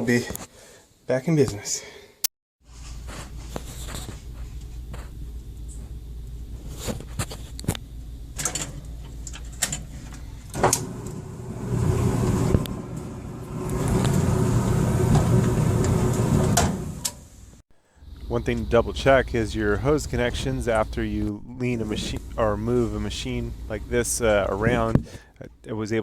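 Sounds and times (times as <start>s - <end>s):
heavy machine scraping across floor: 10.6s - 17.0s.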